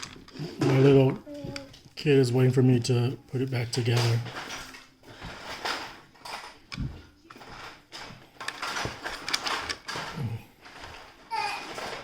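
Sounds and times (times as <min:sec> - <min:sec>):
plastic toy parts clicking: 0:00.0 - 0:00.8, 0:08.4 - 0:11.0.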